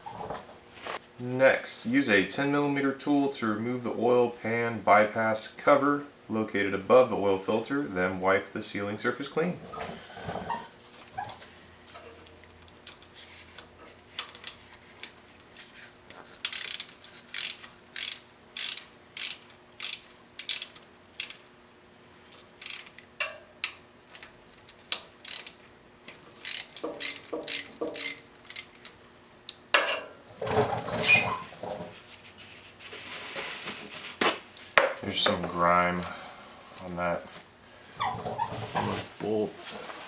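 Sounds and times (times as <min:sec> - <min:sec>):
ratchet wrench clicking: 0:16.4 - 0:21.4, 0:22.6 - 0:23.1, 0:25.2 - 0:25.6, 0:26.4 - 0:28.9.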